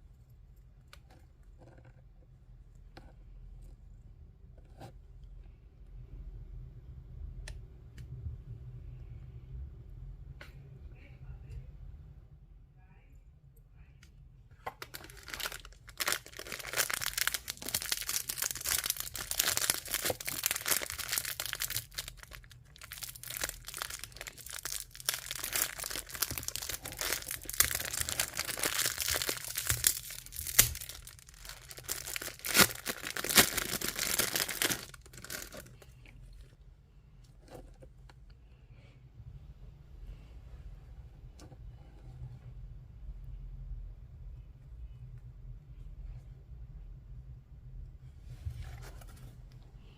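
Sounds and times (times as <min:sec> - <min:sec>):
packaging crinkling and tearing: 0:14.8 - 0:36.0.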